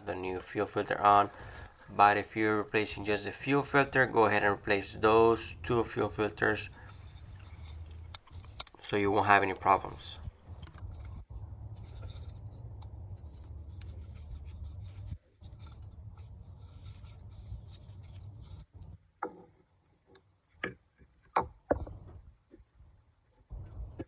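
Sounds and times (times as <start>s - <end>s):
tools clicking and knocking: 8.0s - 9.0s
low rubbing rumble: 9.5s - 18.9s, 23.5s - 24.0s.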